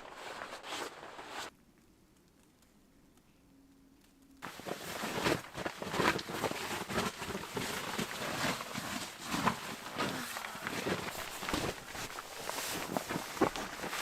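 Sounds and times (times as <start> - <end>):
footsteps crunching through snow: 0.0 - 1.5, 4.4 - 14.0.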